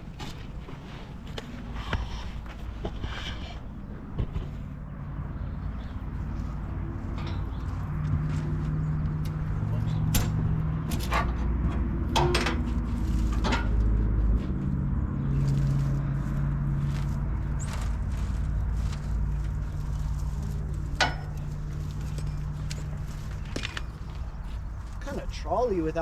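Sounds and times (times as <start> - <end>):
vehicle engine running: 0.0 - 25.0
sharp knocks or clanks: 9.2 - 12.7.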